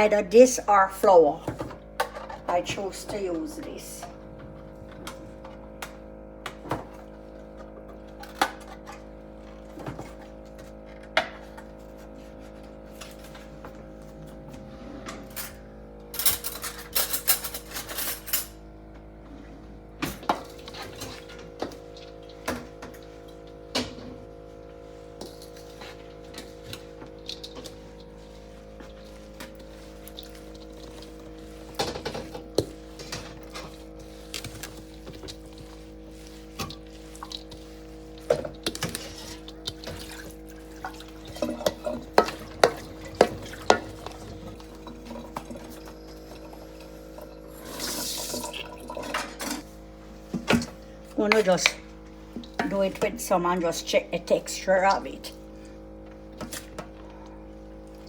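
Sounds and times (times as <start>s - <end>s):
dishes and utensils clinking: 16.2s - 18.5s, 39.6s - 45.8s
scraping and rattling dishes: 16.2s - 18.5s, 38.1s - 46.5s.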